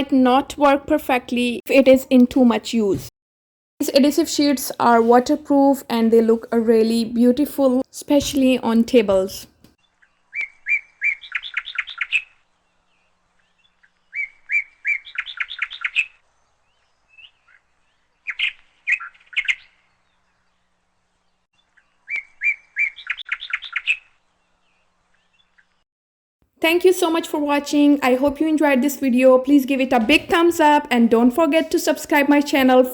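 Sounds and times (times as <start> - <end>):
songbird chirping and trilling: 9.8 - 25.8.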